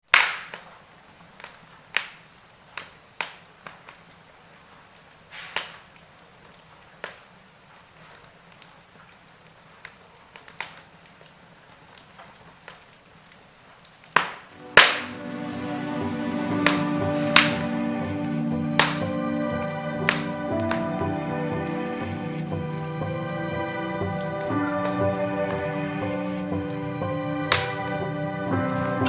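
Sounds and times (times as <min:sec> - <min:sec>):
wood fire crackling: 0:00.1 - 0:29.0
faint hiss: 0:14.5 - 0:29.0.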